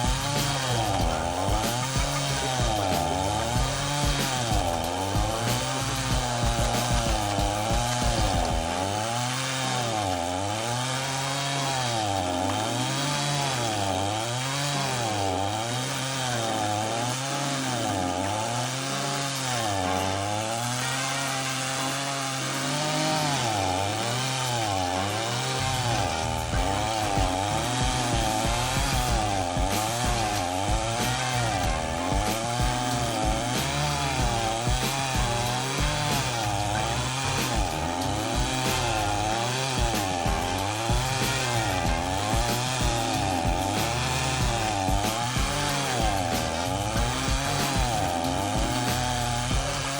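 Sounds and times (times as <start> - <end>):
chainsaw engine grinding stump: 0.0 - 49.9.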